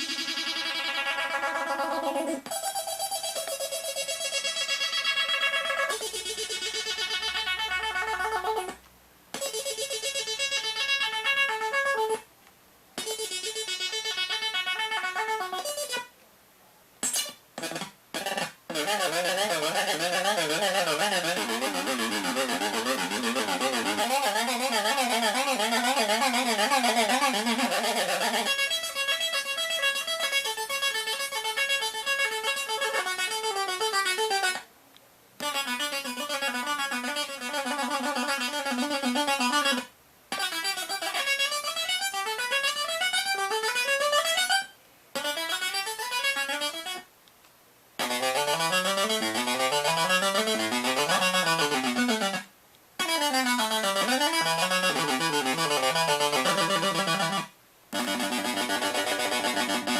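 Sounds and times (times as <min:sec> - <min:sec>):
synthesizer beeping notes: 0:48.0 - 0:52.4.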